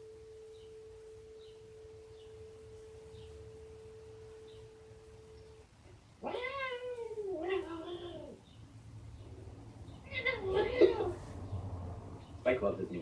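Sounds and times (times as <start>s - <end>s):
faint high chirps: 0.0s - 6.0s
steady pure tone: 0.0s - 6.2s
cat meowing loudly: 6.2s - 8.4s, 10.0s - 11.3s.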